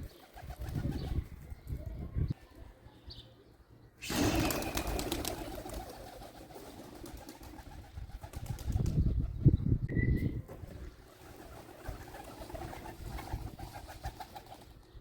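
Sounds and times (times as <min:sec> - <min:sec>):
pigeon wings flapping: 0:04.0 - 0:09.0, 0:10.6 - 0:14.8.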